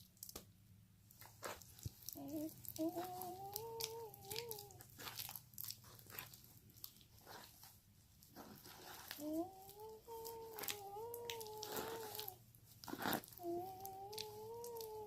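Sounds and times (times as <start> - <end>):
slime being kneaded: 0.0 - 15.0
person humming: 2.1 - 5.0, 9.1 - 12.4, 13.1 - 15.0.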